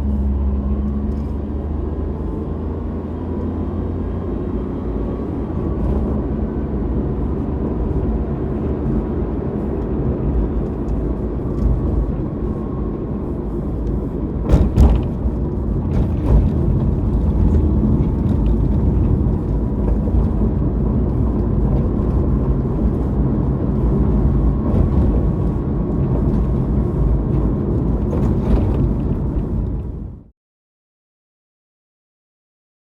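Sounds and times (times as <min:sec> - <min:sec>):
car engine and road rumble: 0:00.0 - 0:30.3
short knocks: 0:14.4 - 0:18.2.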